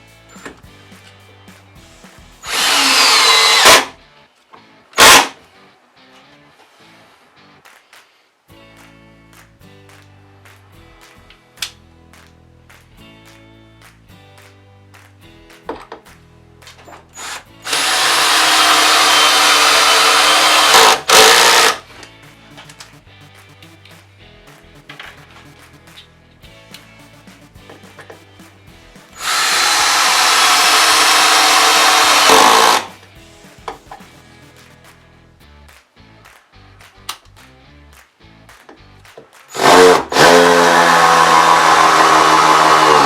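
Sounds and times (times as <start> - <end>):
faint background music: 0.0 - 29.2, 30.0 - 42.9
cordless drill running: 2.4 - 4.0, 5.0 - 5.3, 17.2 - 21.8, 29.2 - 32.9, 39.6 - 43.0.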